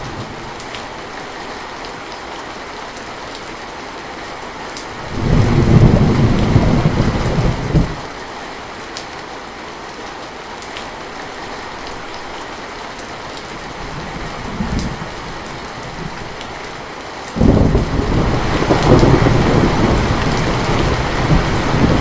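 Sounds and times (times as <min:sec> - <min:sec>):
heavy rain falling: 0:00.0 - 0:22.0
thunder rumbling: 0:05.0 - 0:08.1, 0:17.4 - 0:22.0.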